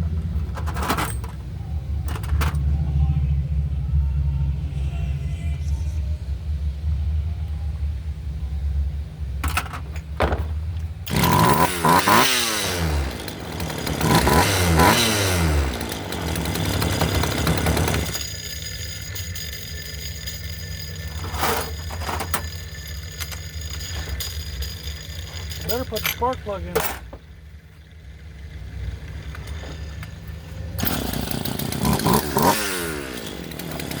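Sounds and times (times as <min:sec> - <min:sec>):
short clatters: 0:00.0 - 0:02.7, 0:09.4 - 0:27.9, 0:29.0 - 0:34.0
chainsaw engine revving: 0:11.1 - 0:27.0, 0:28.0 - 0:34.0.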